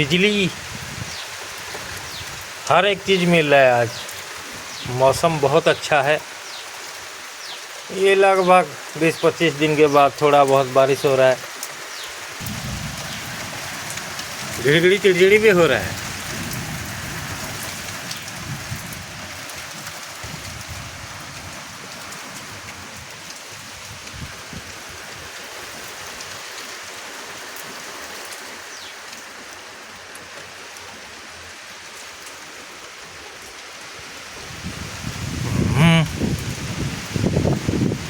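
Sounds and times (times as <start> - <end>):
light rain falling: 0.0 - 38.0.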